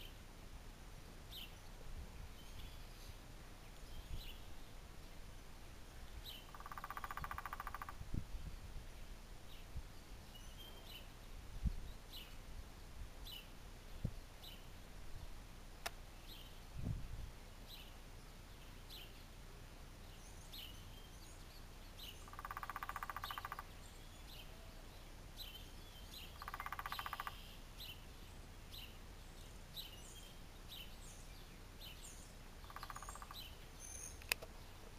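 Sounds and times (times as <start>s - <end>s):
woodpecker drumming: 6.4s - 8.0s, 22.2s - 23.8s, 26.2s - 27.5s, 32.6s - 33.6s
high bird chirps: 22.1s - 23.6s, 25.5s - 28.0s, 32.6s - 34.3s.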